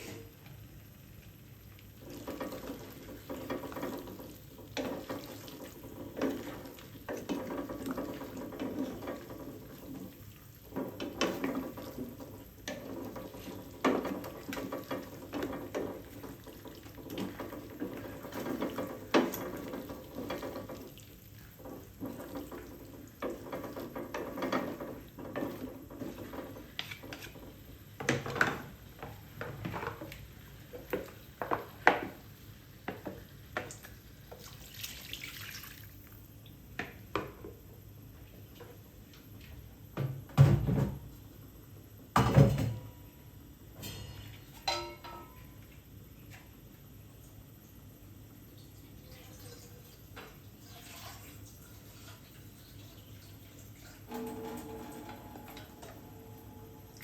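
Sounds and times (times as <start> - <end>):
pots and utensils clinking: 2.1 - 32.2, 43.8 - 45.6.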